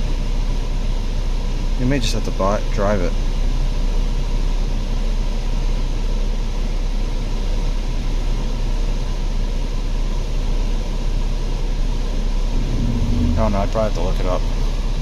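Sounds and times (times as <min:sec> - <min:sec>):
car cabin running noise: 0:12.5 - 0:14.6.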